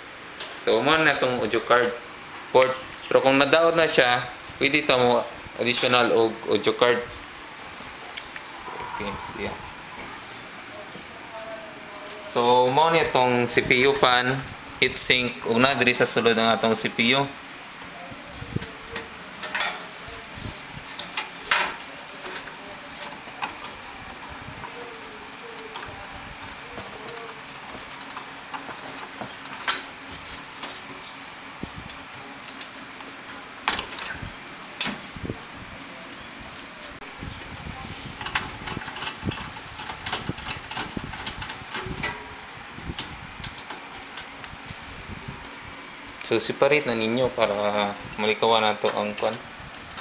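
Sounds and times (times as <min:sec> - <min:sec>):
metal parts clicking and clinking: 0:38.2 - 0:42.2.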